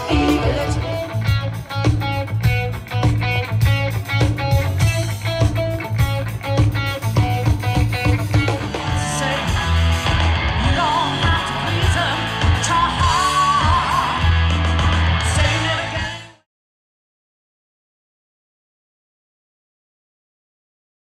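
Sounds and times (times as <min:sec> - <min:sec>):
person singing: 0:00.0 - 0:01.4, 0:08.3 - 0:09.9, 0:10.6 - 0:14.4, 0:15.2 - 0:16.3
strummed electric guitar: 0:00.0 - 0:16.4
bass guitar: 0:00.0 - 0:16.5.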